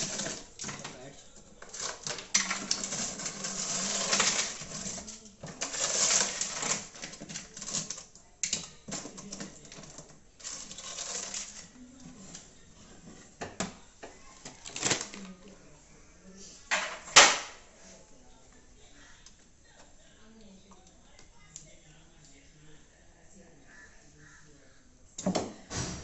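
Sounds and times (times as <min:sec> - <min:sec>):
scraping and rubbing plastic: 0:00.0 - 0:08.2, 0:08.9 - 0:13.4.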